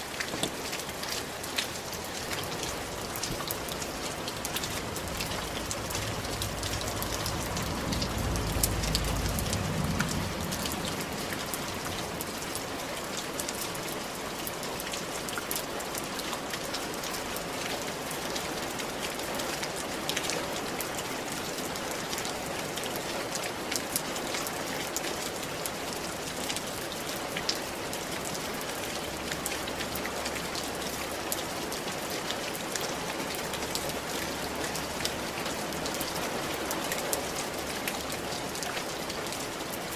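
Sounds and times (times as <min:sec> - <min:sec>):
rain on roof tiles: 0:00.0 - 0:39.9
low rumble: 0:04.2 - 0:12.6.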